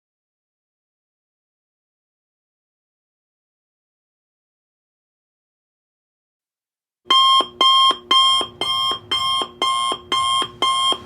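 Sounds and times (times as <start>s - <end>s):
alarm clock beeping: 7.1s - 11.0s.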